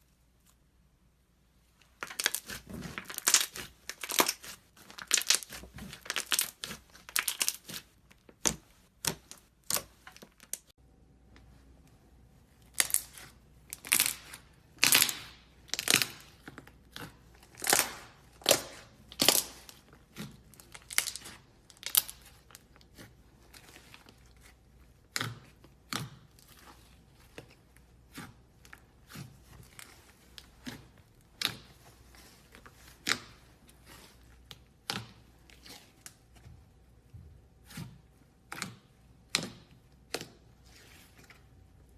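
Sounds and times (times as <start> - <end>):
slime snapping and crackling: 2.0 - 7.8, 12.7 - 19.8, 20.6 - 22.4.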